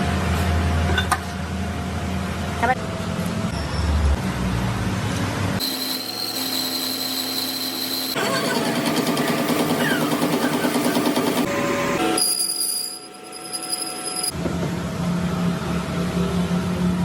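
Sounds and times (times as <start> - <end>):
machine tool high whine: 5.6 - 14.3
rhythmic machining sound: 5.6 - 14.3.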